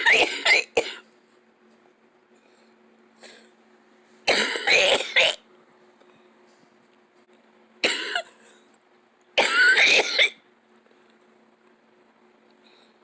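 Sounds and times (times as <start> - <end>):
person coughing: 0.0 - 1.0, 4.3 - 5.4, 7.8 - 8.6, 9.4 - 10.4.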